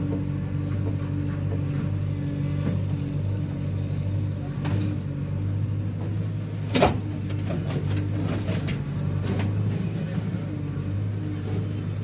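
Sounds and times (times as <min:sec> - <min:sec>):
diesel engine running: 0:00.0 - 0:12.0.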